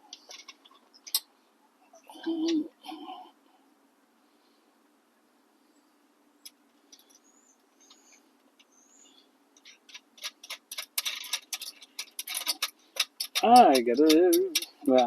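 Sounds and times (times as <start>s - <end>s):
metal hardware clinking: 9.6s - 15.0s
ratchet wrench clicking: 9.9s - 15.0s.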